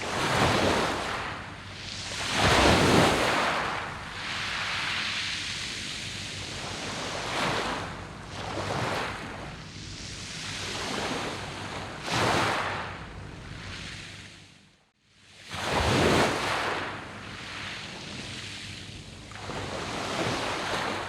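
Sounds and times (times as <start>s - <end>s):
waves washing onto pebble beach: 0.0s - 9.2s.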